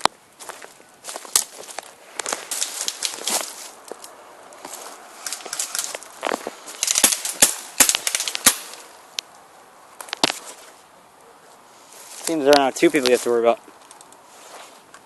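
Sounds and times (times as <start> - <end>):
rustle of movement through brush: 0.0 - 15.0
airsoft guns firing: 6.9 - 8.8.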